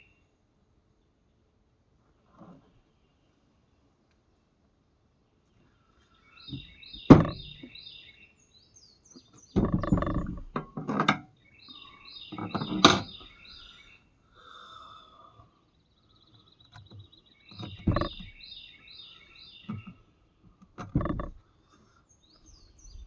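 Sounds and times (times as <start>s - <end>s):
songbird chirping: 0.0s - 1.8s, 2.4s - 23.0s
scraping: 9.6s - 11.2s, 17.6s - 18.4s, 20.7s - 21.4s.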